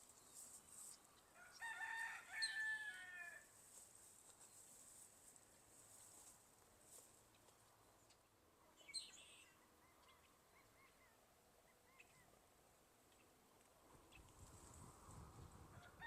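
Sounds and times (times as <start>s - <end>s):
soft high bird twittering: 8.8s - 12.3s.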